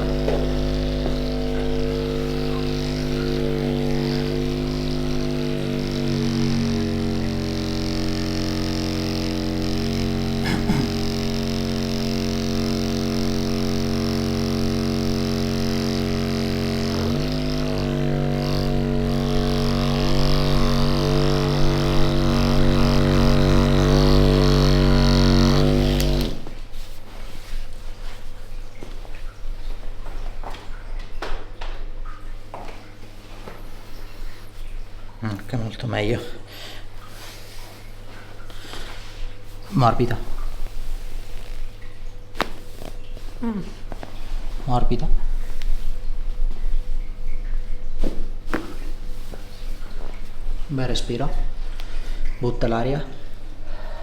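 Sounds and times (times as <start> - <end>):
massage device motor running: 0.0 - 27.0, 38.4 - 45.0.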